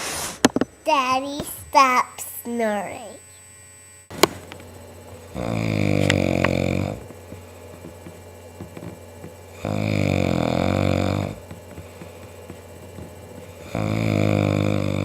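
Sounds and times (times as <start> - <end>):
man snoring: 5.2 - 8.0, 8.6 - 15.0.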